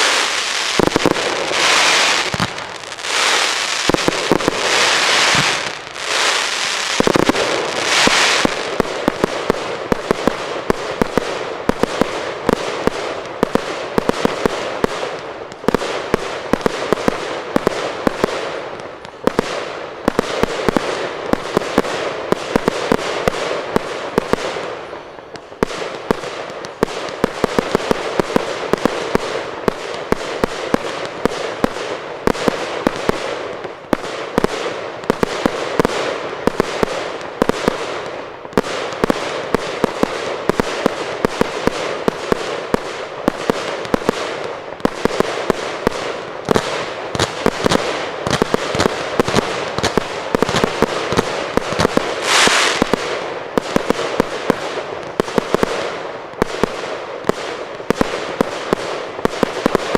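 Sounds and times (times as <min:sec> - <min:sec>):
fireworks bangs and crackling: 0:00.0 - 0:59.9.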